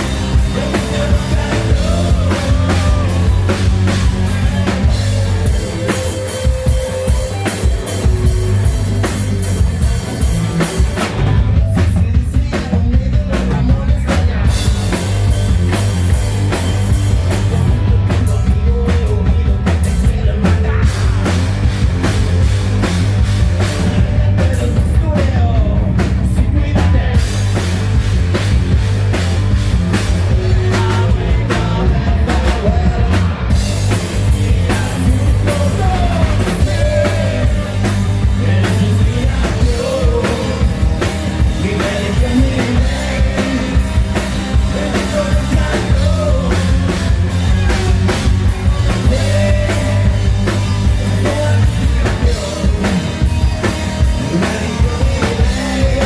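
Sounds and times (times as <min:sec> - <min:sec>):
live hard rock band: 0:00.0 - 0:56.0.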